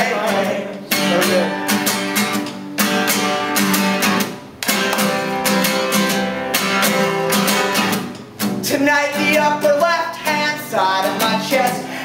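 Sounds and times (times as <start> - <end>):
acoustic guitar strumming: 0.0 - 12.0
person singing: 8.7 - 12.0.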